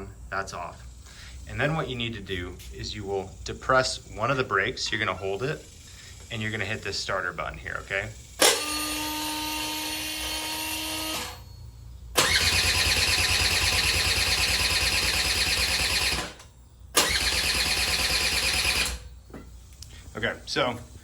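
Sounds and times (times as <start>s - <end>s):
scooter starter cranking engine: 12.2s - 16.4s, 17.0s - 19.1s.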